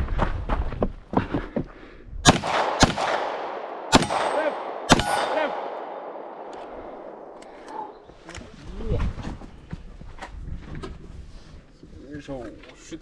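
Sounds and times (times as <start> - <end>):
pistol shots echoing: 2.3 - 8.1
steel targets ringing: 3.9 - 6.3.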